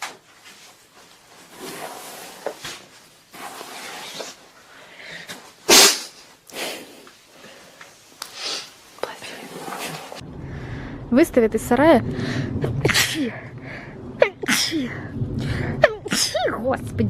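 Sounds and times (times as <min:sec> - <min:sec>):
person sneezing: 0:05.6 - 0:06.8
noisy breaths: 0:06.5 - 0:11.1.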